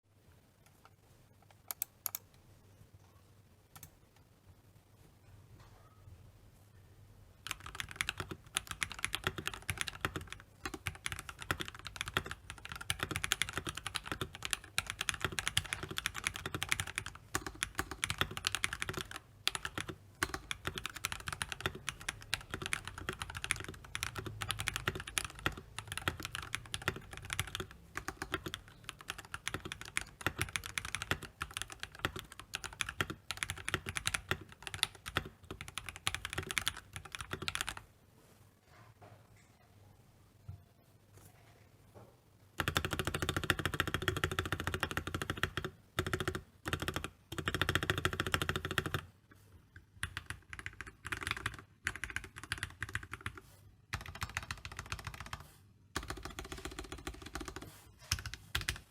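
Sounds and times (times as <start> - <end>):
mechanical keyboard typing: 7.4 - 37.8, 42.6 - 49.1, 49.8 - 55.4, 56.0 - 58.9.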